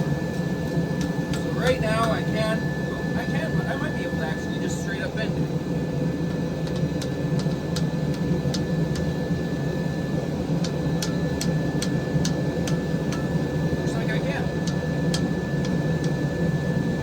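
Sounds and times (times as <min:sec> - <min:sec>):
thin high whine: 0:00.0 - 0:06.6.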